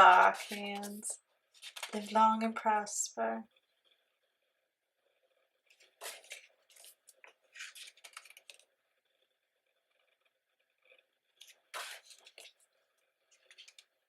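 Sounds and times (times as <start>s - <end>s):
paper or plastic rustling: 0.0s - 2.5s, 5.7s - 8.7s, 11.4s - 13.9s.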